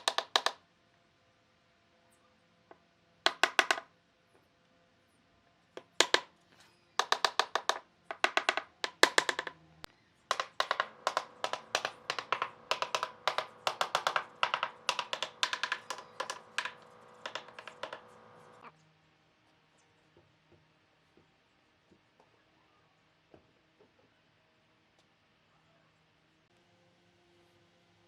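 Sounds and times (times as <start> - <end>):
sharp ringing taps: 10.3 - 18.6.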